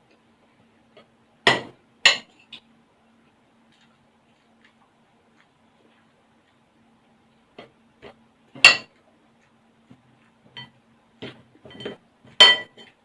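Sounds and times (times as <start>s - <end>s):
light cutlery taps and scrapes: 7.6s - 13.0s
cutlery clinking on a dish: 11.6s - 13.0s.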